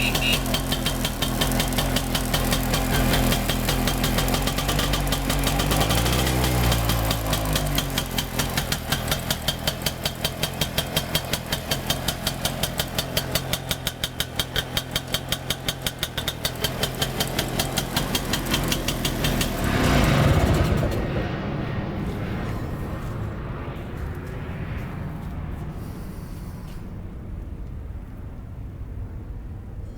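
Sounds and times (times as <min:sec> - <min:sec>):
two-stroke engine idling: 0:00.0 - 0:21.1.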